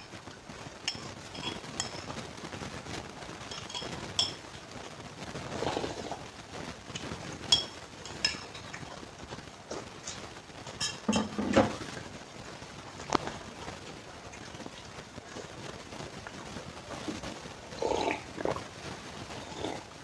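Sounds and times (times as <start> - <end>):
cutlery clinking against bowl: 0.9 - 2.1, 7.5 - 8.9, 10.7 - 11.8
chewing and slurping noodles: 5.5 - 6.2, 17.0 - 18.6, 19.3 - 19.9.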